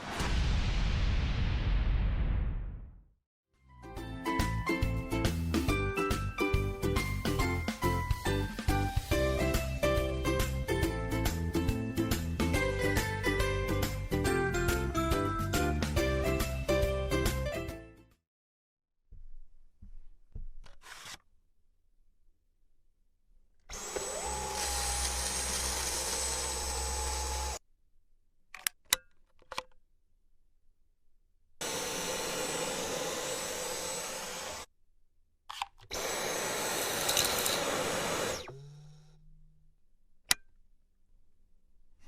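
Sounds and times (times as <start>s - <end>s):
background music: 3.7s - 18.2s
stick vacuum running: 23.7s - 27.6s, 31.6s - 34.7s, 35.9s - 39.3s.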